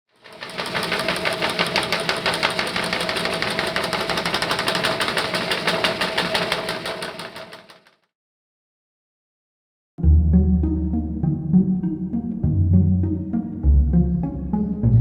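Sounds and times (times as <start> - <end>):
machine clattering over a hum: 0.2 - 7.8.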